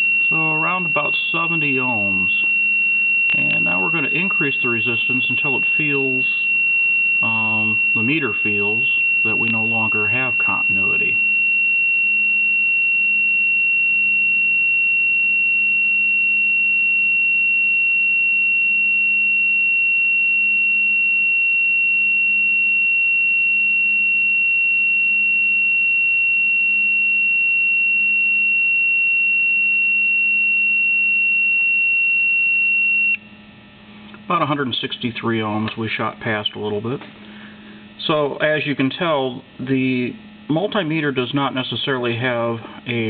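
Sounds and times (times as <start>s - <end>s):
multimeter continuous beep: 0.0s - 33.5s.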